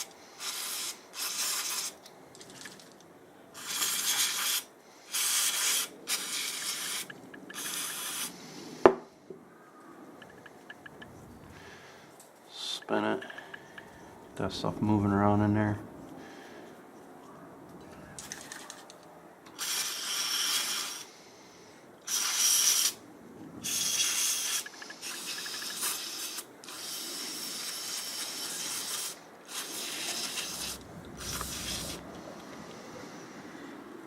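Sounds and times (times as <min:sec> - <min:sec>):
aerosol spray hissing bursts: 0:00.0 - 0:02.0, 0:03.6 - 0:08.5, 0:19.6 - 0:21.1, 0:22.1 - 0:23.0, 0:23.6 - 0:32.2.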